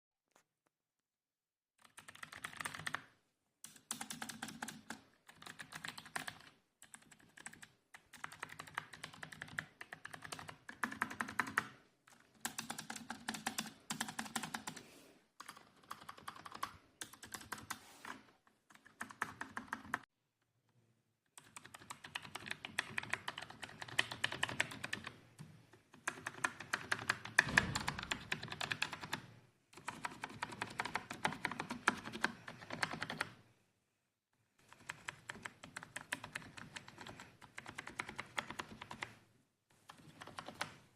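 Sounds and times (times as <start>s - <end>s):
fast keyboard typing: 1.8s - 20.1s, 21.4s - 25.2s, 25.9s - 33.4s, 34.6s - 39.2s, 39.8s - 40.9s.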